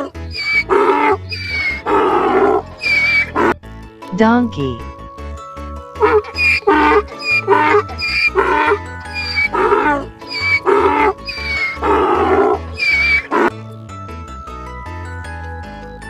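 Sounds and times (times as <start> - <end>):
donkey braying: 0.0 - 3.5, 6.0 - 13.5
background music: 0.0 - 16.0.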